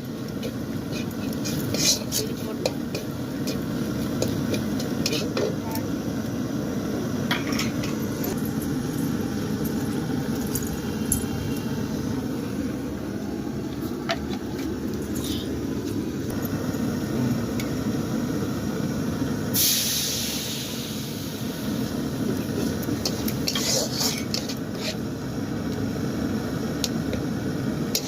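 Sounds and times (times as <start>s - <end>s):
loud hiss from pan: 0.0s - 12.1s, 17.8s - 28.0s
low rumble of fire: 0.0s - 28.0s.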